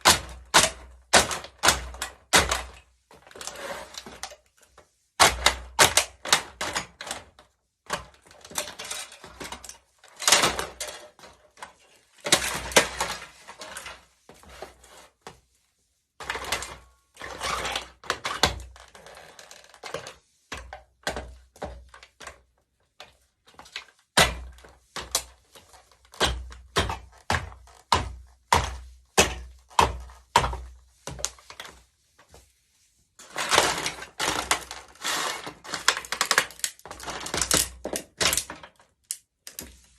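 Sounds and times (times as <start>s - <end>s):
plastic toy cracking under heels: 33.4s - 39.7s.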